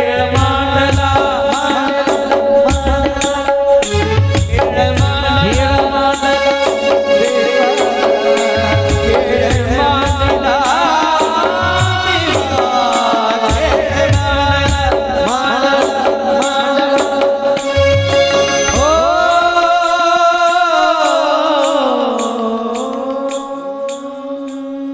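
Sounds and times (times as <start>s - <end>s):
drum strokes: 0.0s - 21.8s
man singing: 0.0s - 24.9s
steady drone: 17.6s - 20.2s.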